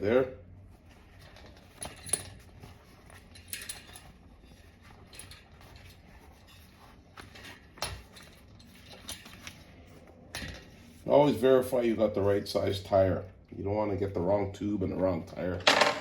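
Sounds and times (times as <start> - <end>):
rustling of inner tube handling: 0.4 - 12.3.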